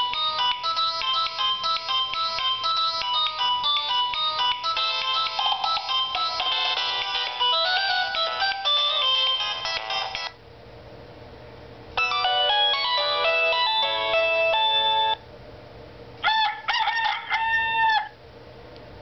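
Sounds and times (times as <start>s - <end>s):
phone ringtone melodies: 0.0s - 10.4s, 12.0s - 15.2s.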